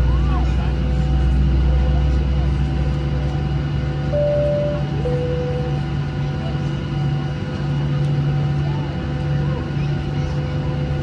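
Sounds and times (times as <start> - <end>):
cabin and engine hum: 0.0 - 11.0
two-tone cabin chime: 4.1 - 6.0.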